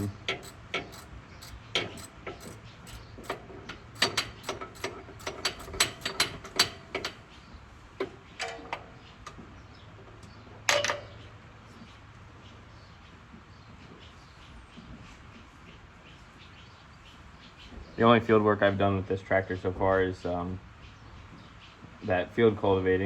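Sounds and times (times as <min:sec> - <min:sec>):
metal clink: 0:00.0 - 0:03.4, 0:04.0 - 0:07.2
ratchet wrench clicking: 0:00.0 - 0:07.2.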